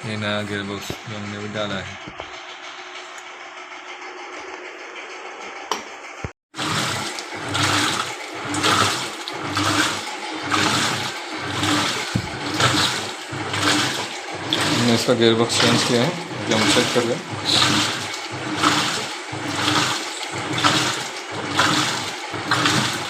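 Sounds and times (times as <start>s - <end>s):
water sloshing in washing machine: 6.5s - 23.0s.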